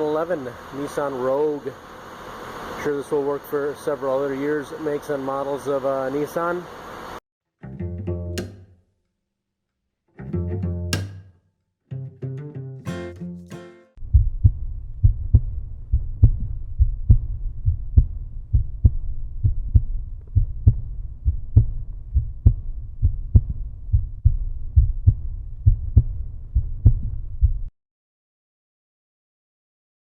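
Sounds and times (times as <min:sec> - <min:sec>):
deep throbbing bass beat: 0:14.0 - 0:27.7.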